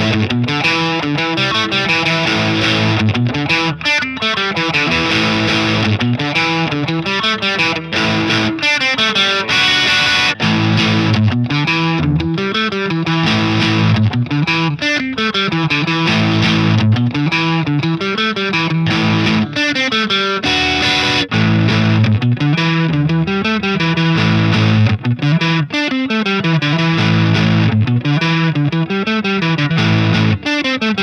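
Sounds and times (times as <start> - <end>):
electric guitar riff: 0.0 - 31.0.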